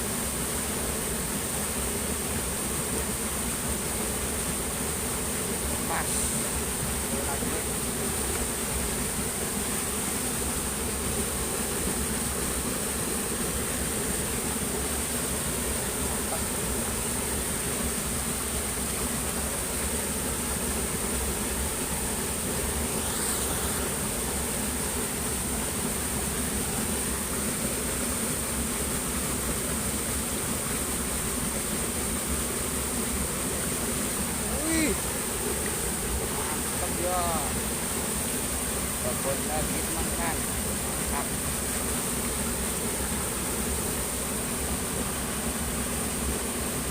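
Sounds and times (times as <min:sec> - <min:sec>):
insects buzzing: 0:00.0 - 0:46.9
steady high hiss: 0:00.0 - 0:46.9
stream water flowing: 0:00.0 - 0:46.9
person exclaiming: 0:34.4 - 0:35.1.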